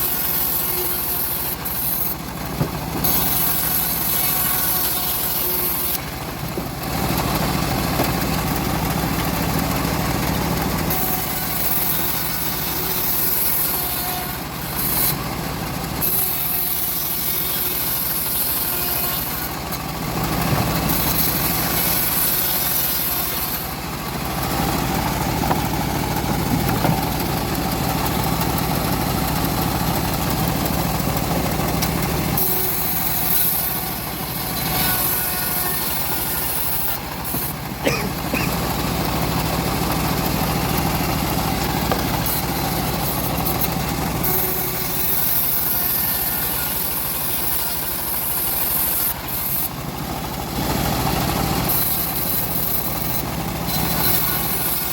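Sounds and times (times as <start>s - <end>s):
motor hum: 0.0s - 45.6s
bandsaw mill sawing log: 0.0s - 54.9s.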